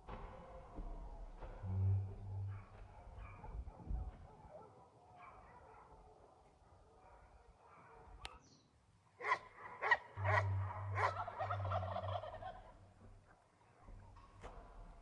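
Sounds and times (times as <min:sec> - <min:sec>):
animal rapidly warbling call: 0:10.2 - 0:12.8.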